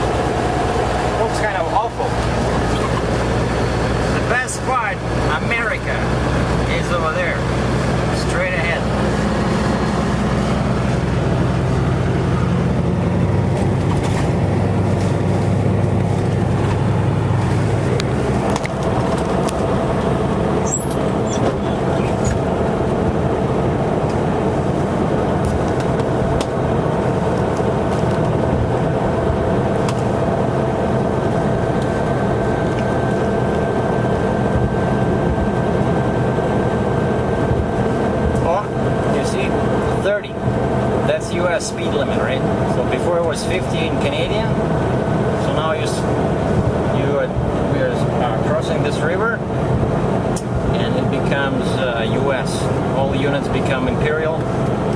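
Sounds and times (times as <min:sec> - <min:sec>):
diesel truck engine running: 0:00.0 - 0:54.9
road noise: 0:00.0 - 0:54.9.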